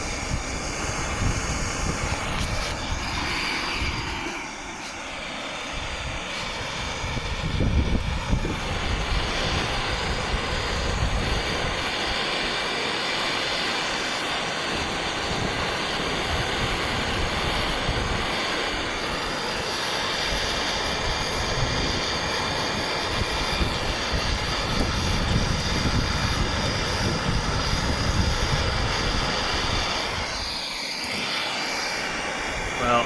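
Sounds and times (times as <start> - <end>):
gas torch roaring: 0.0 - 33.0.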